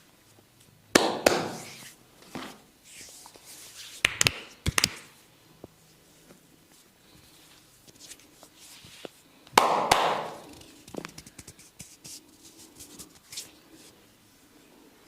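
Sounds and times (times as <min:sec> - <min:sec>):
sharp hand smacks: 0:04.0 - 0:05.1, 0:09.6 - 0:10.5.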